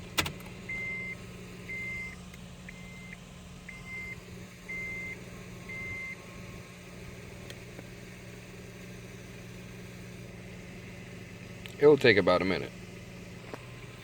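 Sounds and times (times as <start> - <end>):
low steady hum: 0.0 - 14.0
electronic beeping: 0.7 - 6.2.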